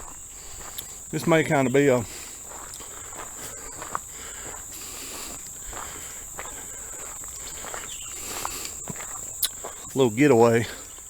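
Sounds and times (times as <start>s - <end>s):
faint footsteps on a trail: 0.0s - 11.0s
insects trilling: 0.0s - 11.0s.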